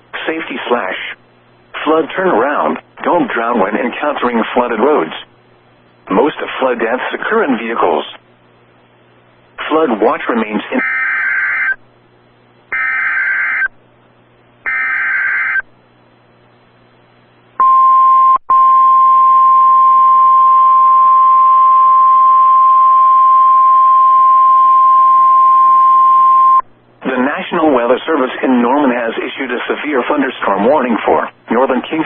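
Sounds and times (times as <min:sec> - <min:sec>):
loud steady alarm beep: 0:12.8 - 0:13.7, 0:14.7 - 0:15.6, 0:17.6 - 0:26.6.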